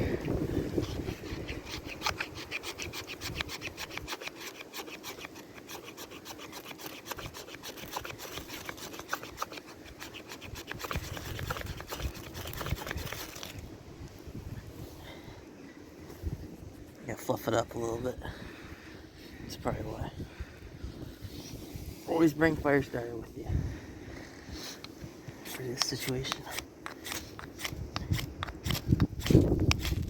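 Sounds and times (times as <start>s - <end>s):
wind rumbling on microphone: 0.0s - 4.1s, 9.9s - 25.5s, 27.1s - 30.0s
rapid rasping scrapes: 0.3s - 13.6s, 24.7s - 30.0s.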